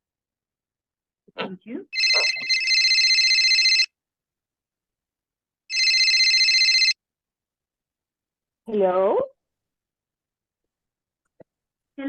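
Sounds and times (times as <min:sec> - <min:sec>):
telephone ringing: 0:02.0 - 0:04.0, 0:05.7 - 0:07.0.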